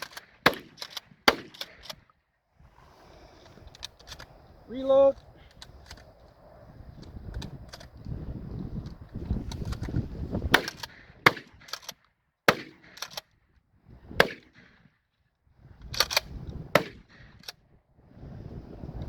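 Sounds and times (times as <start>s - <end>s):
shotgun shots: 0.0s - 2.0s, 10.5s - 11.8s, 12.5s - 13.2s, 14.2s - 14.8s, 16.7s - 17.4s
shotgun pump clacks: 0.0s - 2.1s, 7.0s - 8.2s, 8.8s - 13.3s, 15.8s - 17.6s.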